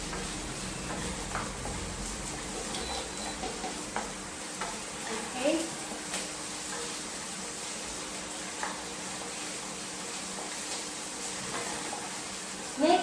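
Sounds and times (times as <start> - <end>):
onions sizzling in a pan: 0.0 - 13.0.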